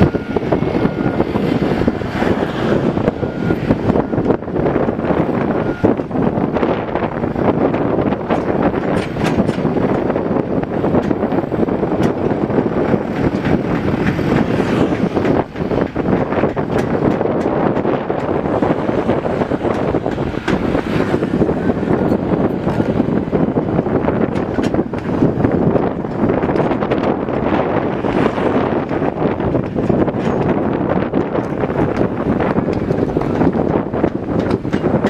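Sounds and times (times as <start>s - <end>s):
excavator diesel engine running: 0.0s - 35.0s
wind on microphone: 0.0s - 35.0s
clicks and knocks: 7.7s - 10.1s.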